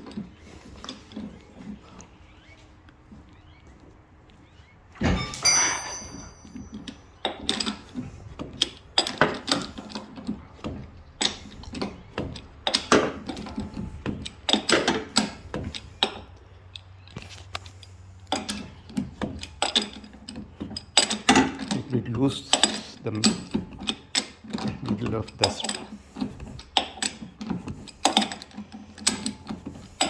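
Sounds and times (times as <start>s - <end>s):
metal tools clanking: 5.0s - 7.9s.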